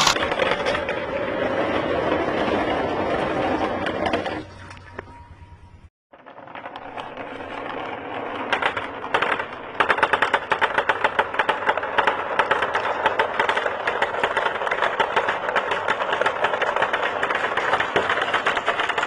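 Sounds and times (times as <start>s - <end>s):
marbles clattering down a track: 6.2s - 19.0s.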